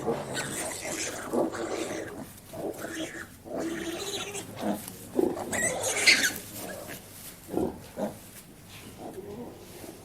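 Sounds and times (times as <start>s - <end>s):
pig squealing: 0.0s - 6.4s
pigs grunting: 0.0s - 8.2s.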